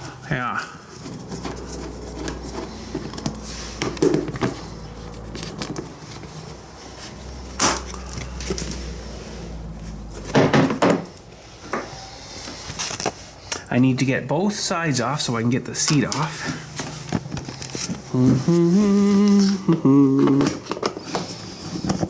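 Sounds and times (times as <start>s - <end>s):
low steady hum: 0.0s - 13.2s
objects knocking and clattering: 0.9s - 6.6s, 10.2s - 12.0s.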